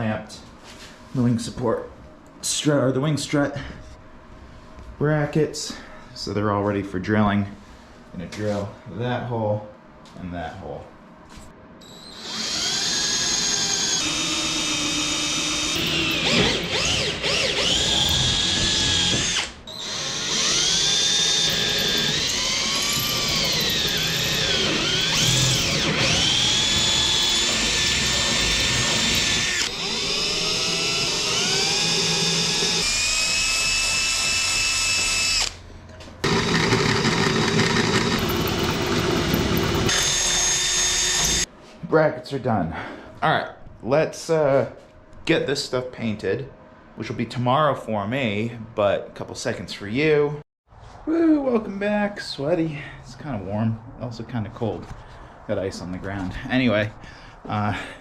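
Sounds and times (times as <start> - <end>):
power drill boring through metal: 11.8 - 35.6, 36.2 - 41.5.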